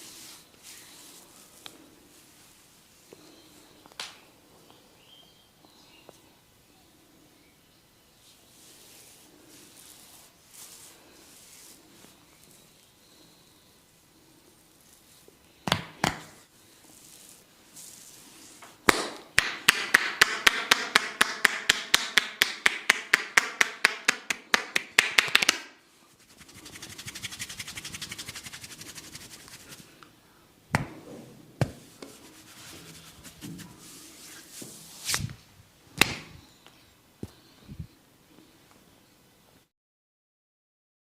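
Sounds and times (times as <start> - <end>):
hands slapping in massage: 15.6 - 16.4, 18.8 - 25.7, 30.7 - 31.0, 36.0 - 36.4.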